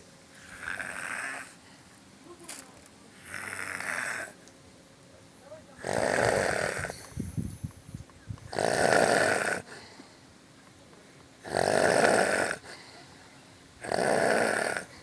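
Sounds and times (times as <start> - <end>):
man snoring: 0.4 - 1.6, 3.2 - 4.4, 5.8 - 7.0, 8.5 - 9.8, 11.4 - 12.8, 13.8 - 15.0.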